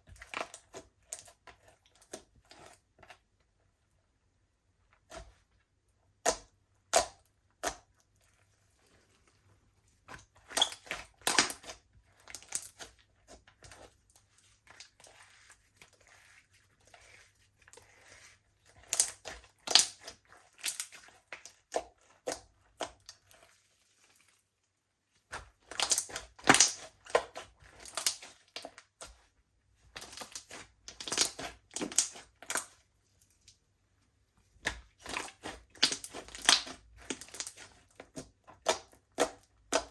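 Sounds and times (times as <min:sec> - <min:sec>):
slime squeezed with sticky pops: 0:10.3 - 0:13.0.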